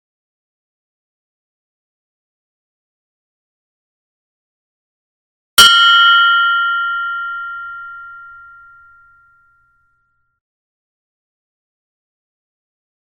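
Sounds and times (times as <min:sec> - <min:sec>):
meditation bell ringing: 0:05.6 - 0:10.2.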